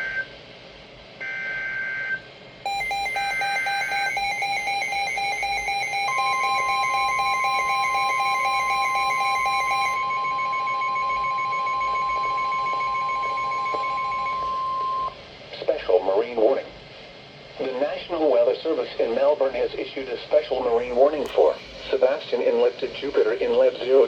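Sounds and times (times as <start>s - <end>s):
warbling data bursts: 2.7s - 14.5s
rapidly pulsing alert beep: 2.7s - 15.1s
steady warning alarm tone: 2.7s - 15.2s.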